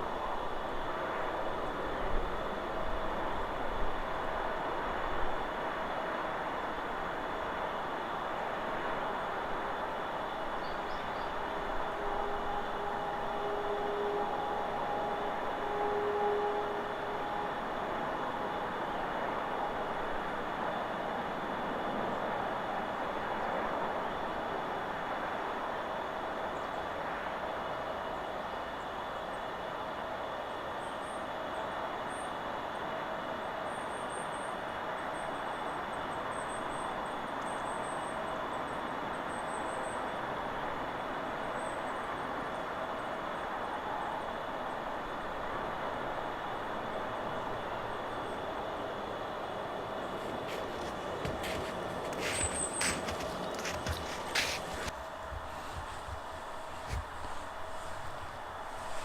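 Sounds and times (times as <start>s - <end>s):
wind rushing through trees: 42.2s - 59.0s.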